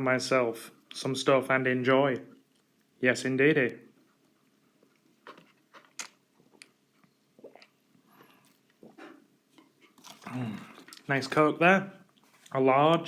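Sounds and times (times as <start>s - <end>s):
person chewing crunchy food: 4.8s - 11.1s
wet mouth clicks: 5.2s - 11.1s.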